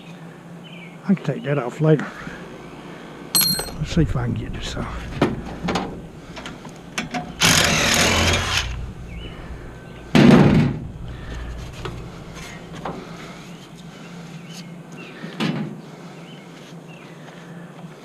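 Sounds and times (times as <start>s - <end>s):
small metal knocks: 3.4s - 3.8s
heavy metal clunk: 3.4s - 13.8s
harsh metal scrape: 3.8s - 14.2s.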